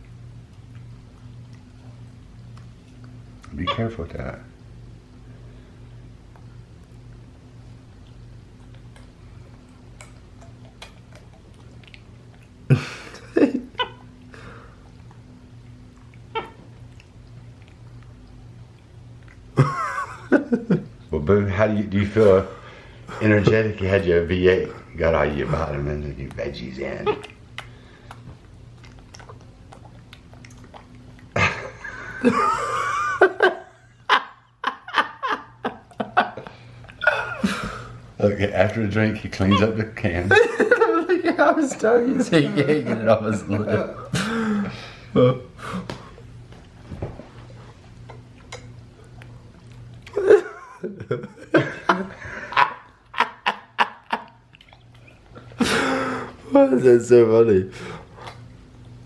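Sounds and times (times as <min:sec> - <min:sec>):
steady low hum: 0:00.0 - 0:59.0
monkey calls: 0:16.3 - 0:16.6, 0:27.0 - 0:27.4, 0:39.5 - 0:39.8.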